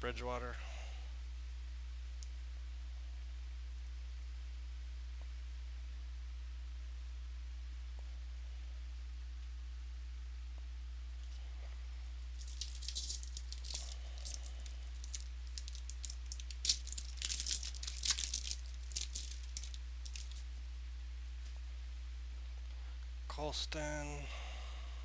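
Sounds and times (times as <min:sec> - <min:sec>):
low electrical hum: 0:00.0 - 0:25.0
trading cards rustling and flicking: 0:12.2 - 0:20.5.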